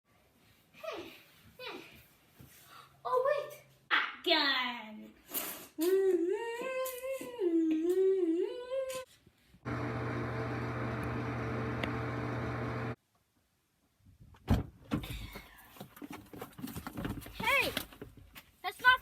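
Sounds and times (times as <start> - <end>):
thump: 14.4 - 15.2.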